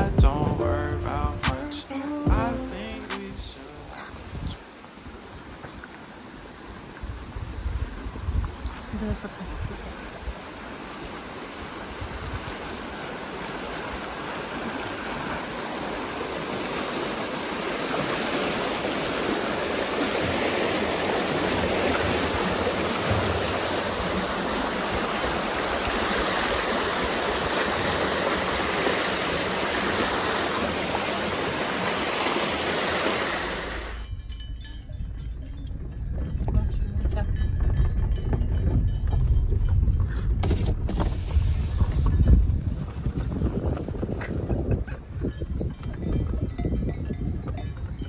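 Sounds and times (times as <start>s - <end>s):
rushing water: 0.0s - 34.2s.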